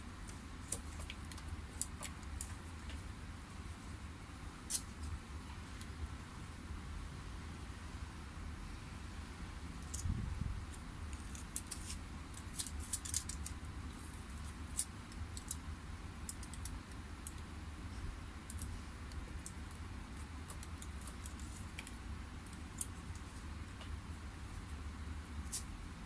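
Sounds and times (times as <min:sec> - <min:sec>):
steady low hum: 0:00.0 - 0:26.0
foil tape clicking and crinkling: 0:00.3 - 0:02.9, 0:09.8 - 0:17.5, 0:18.4 - 0:23.3.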